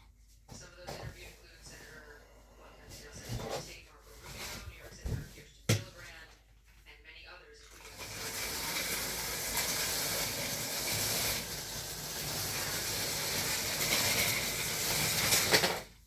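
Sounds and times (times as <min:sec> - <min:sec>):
model train hissing on track: 0:07.9 - 0:15.8.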